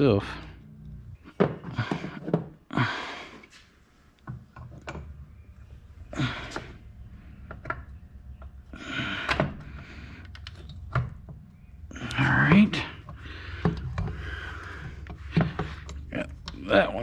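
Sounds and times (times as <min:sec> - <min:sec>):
clicks and knocks of engine parts: 0:07.4 - 0:17.0.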